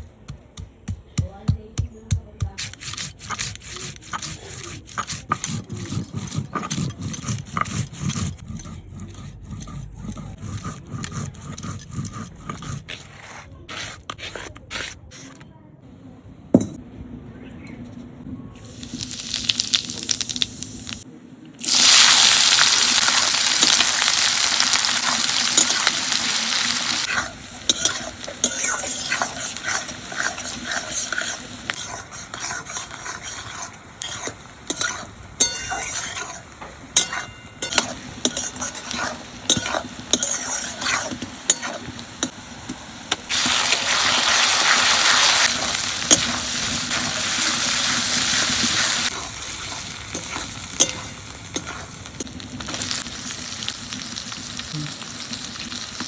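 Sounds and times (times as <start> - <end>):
spatula scraping pan: 2.4 - 15.5, 22.5 - 53.1
food sizzling in hot oil: 18.6 - 56.0.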